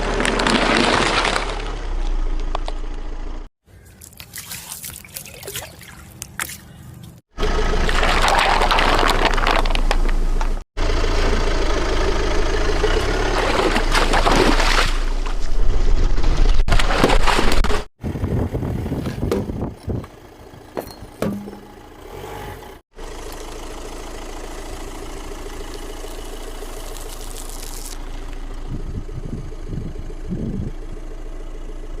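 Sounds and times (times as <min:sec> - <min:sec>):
grinding and crunching: 0:00.0 - 0:10.6, 0:12.8 - 0:17.9, 0:23.0 - 0:28.7
car engine running: 0:06.7 - 0:14.3, 0:19.4 - 0:32.0.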